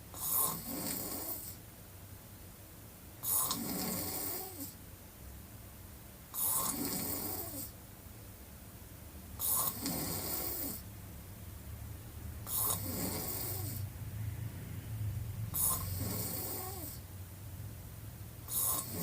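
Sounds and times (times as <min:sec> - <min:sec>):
woman snoring: 0:00.2 - 0:01.6, 0:03.2 - 0:04.8, 0:06.3 - 0:07.7, 0:09.4 - 0:10.9, 0:12.4 - 0:13.9, 0:15.5 - 0:17.0, 0:18.5 - 0:19.0.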